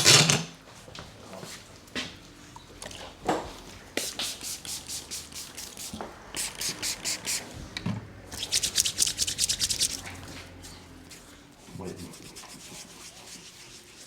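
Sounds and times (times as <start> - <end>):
hands rubbing over skin: 4.0 - 7.5, 8.4 - 10.2, 11.9 - 14.0.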